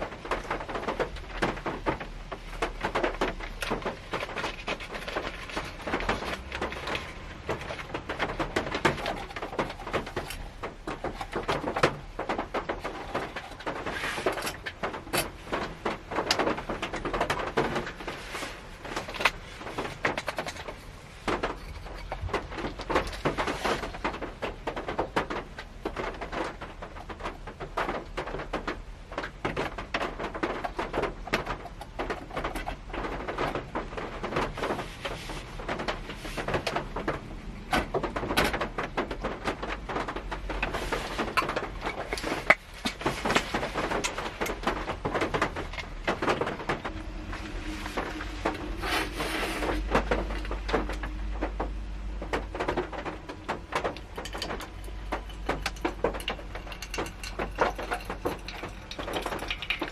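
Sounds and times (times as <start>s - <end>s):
raindrops pattering on car roof: 0.0s - 59.9s.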